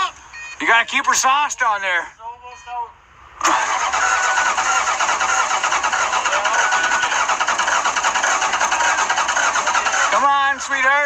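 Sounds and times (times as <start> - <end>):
truck engine cranking on starter: 3.4 - 10.5.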